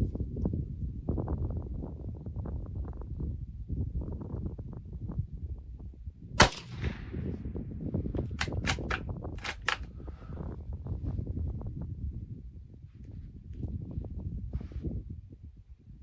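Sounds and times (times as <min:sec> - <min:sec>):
rifle shot with echo: 0:06.4 - 0:07.6, 0:08.4 - 0:09.8
sharp clicks: 0:08.4 - 0:09.9.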